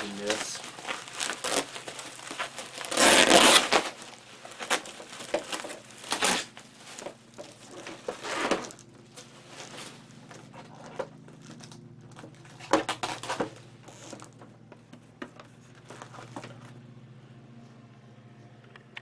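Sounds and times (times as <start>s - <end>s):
plastic packing crinkling: 0.0s - 14.6s.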